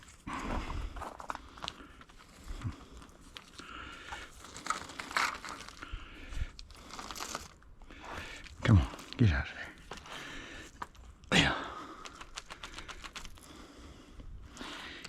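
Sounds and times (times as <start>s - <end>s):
scrap rustling and crinkling: 0.0s - 9.2s.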